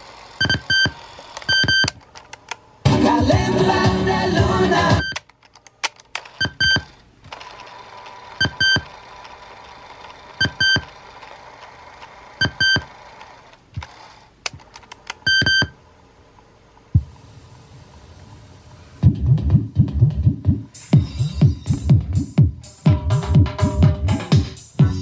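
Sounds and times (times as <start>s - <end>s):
steady hiss: 16.6s - 19.2s.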